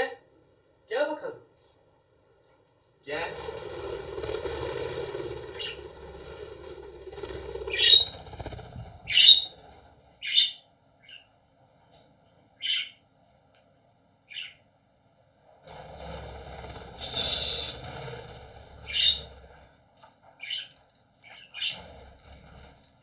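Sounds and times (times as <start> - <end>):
steady hum: 3.3 - 10.2, 15.7 - 19.8
budgerigars chirping: 5.6 - 5.8, 7.6 - 11.3, 12.6 - 13.0, 14.3 - 14.6, 17.0 - 17.8, 18.8 - 19.4, 20.4 - 21.9.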